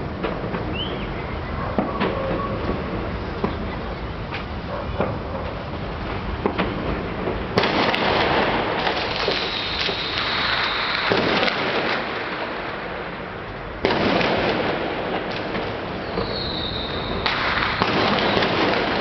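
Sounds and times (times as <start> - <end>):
fireworks bursting and crackling: 0.0 - 19.0.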